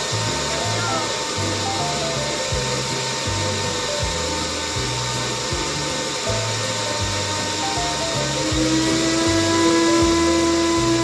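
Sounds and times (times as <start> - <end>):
background music with bass line: 0.0 - 11.0
blender motor running: 0.0 - 11.0.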